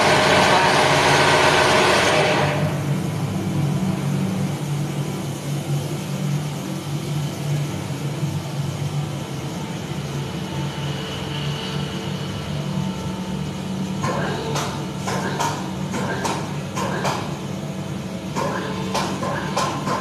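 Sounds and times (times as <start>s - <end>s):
loud rushing noise: 0.0s - 8.3s
engine running low hum: 0.0s - 20.0s.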